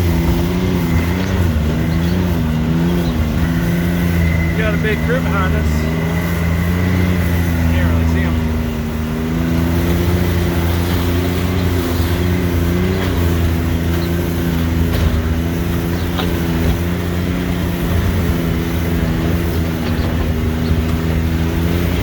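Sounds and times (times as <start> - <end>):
off-road vehicle engine running: 0.0 - 22.0.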